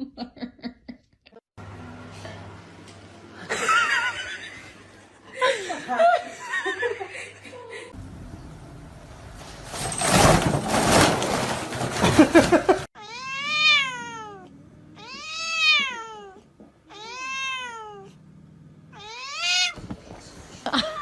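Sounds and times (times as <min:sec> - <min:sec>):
cat meowing: 0:13.0 - 0:18.2, 0:18.9 - 0:19.8.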